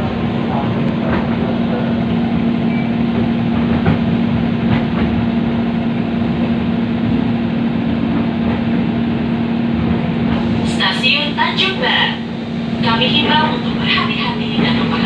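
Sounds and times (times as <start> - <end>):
constant hum: 0.0 - 15.0
train running noise: 0.0 - 15.0.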